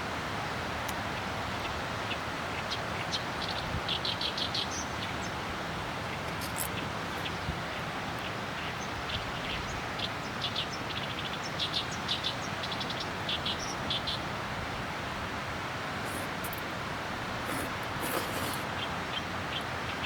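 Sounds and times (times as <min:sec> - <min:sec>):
birds chirping: 0:06.0 - 0:08.3
steady hiss: 0:15.6 - 0:18.9.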